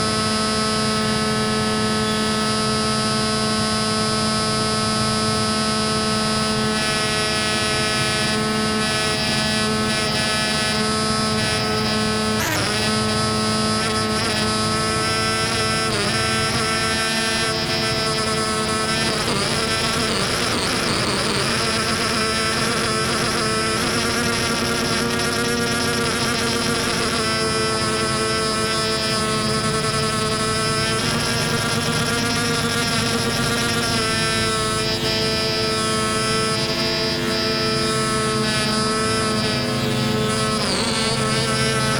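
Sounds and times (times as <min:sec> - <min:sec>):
synthesizer drone: 0:11.0 - 0:16.7.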